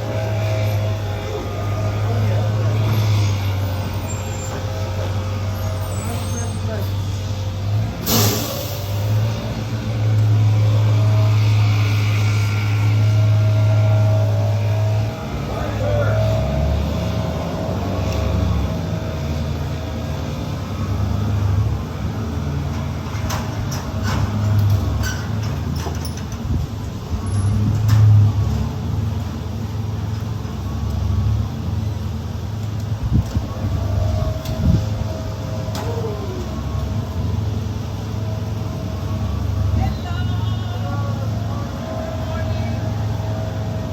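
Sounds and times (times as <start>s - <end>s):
bus engine drone: 0.0s - 43.9s
short hiss: 8.0s - 9.1s.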